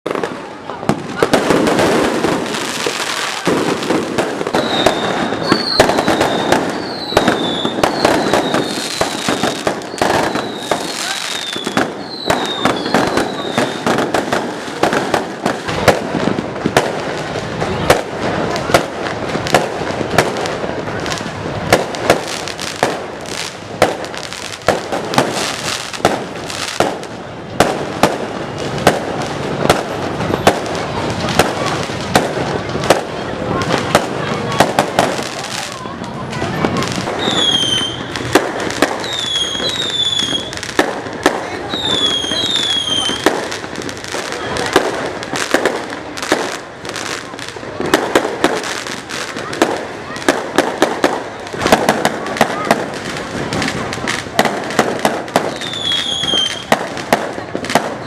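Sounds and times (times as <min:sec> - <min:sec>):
fireworks bangs and crackling: 0:00.0 - 0:58.0
firework whistles: 0:04.1 - 0:14.1, 0:37.0 - 0:40.8, 0:41.6 - 0:44.4, 0:55.3 - 0:56.8.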